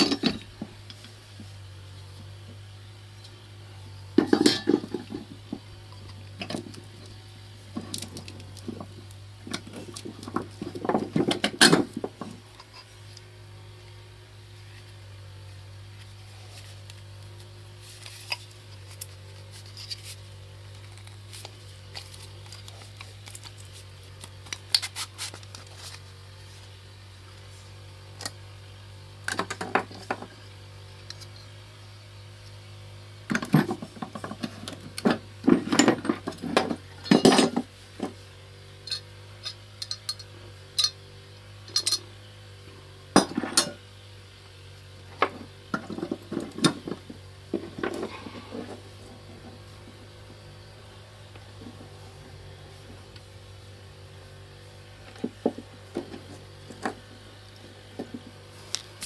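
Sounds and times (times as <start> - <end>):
metallic clinks and knocks: 38.9 - 41.0, 41.7 - 42.1.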